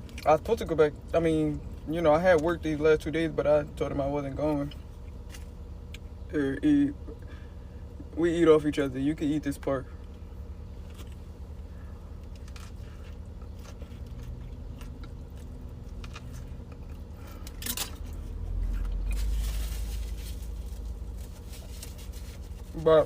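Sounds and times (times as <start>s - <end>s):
low hum: 0.0s - 23.0s
person chewing food: 10.8s - 19.2s.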